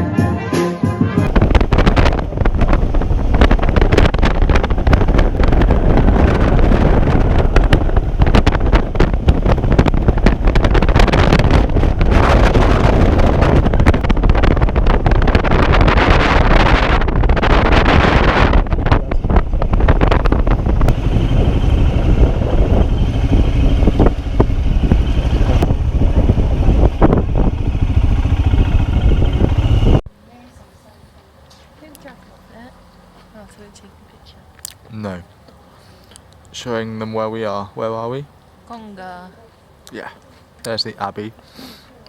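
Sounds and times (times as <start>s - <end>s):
motorcycle low rumble: 1.2s - 41.2s
wind buffeting microphone: 1.3s - 30.1s.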